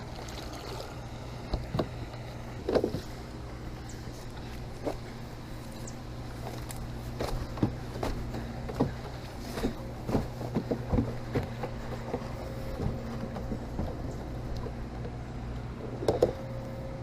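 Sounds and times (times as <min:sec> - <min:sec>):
low mechanical hum: 0:00.0 - 0:17.0
knocks taps and rustles of handling: 0:06.5 - 0:15.2.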